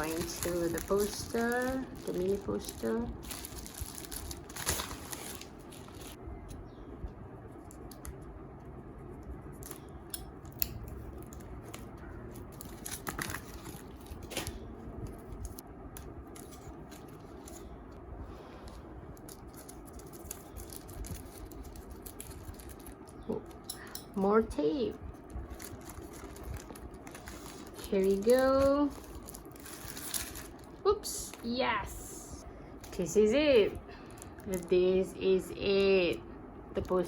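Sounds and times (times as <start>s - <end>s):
parcel packaging rustling: 0.0s - 6.2s, 11.2s - 18.0s, 19.1s - 23.7s, 25.1s - 31.4s, 33.8s - 34.8s.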